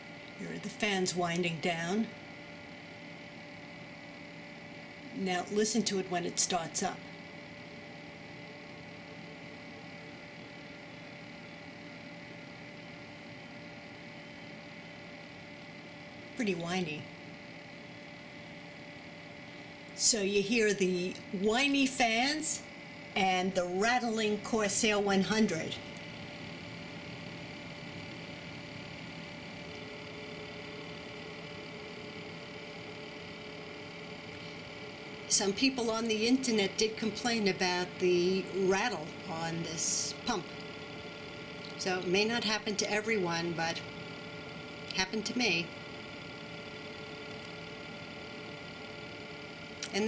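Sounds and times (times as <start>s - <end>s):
computer fans and pump whine: 0.0s - 50.0s.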